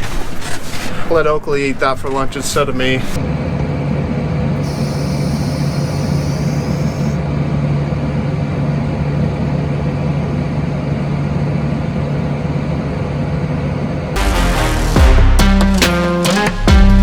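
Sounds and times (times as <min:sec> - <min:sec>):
faint high whine: 0:03.2 - 0:14.0
tractor diesel engine droning: 0:03.2 - 0:14.9.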